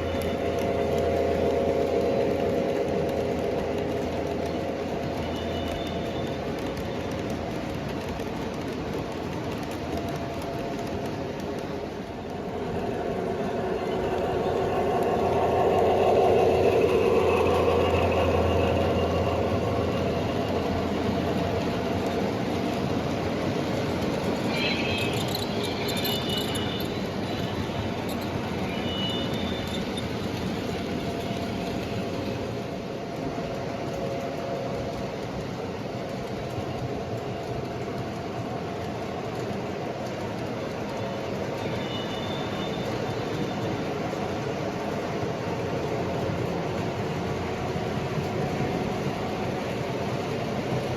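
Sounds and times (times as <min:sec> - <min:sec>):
wheel squeals and clicks: 0:00.0 - 0:11.9, 0:12.6 - 0:32.7, 0:39.4 - 0:45.2
model train rolling rumble: 0:00.0 - 0:50.9.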